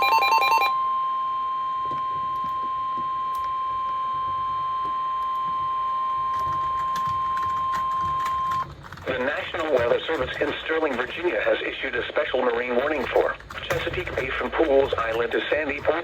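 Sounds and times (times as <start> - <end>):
high-pitched warning beep: 0.0 - 1.6.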